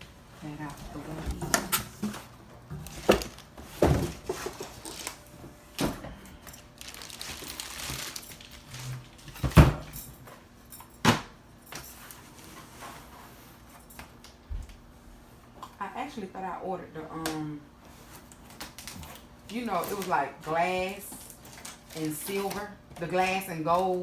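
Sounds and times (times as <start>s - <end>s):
items knocking and clacking: 1.0s - 5.2s
packaging rustling: 1.9s - 5.8s, 6.4s - 9.4s, 21.2s - 22.7s.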